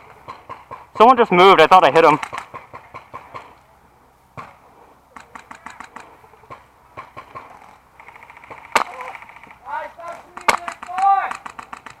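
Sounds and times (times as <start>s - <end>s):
airsoft gun firing: 5.2s - 12.0s.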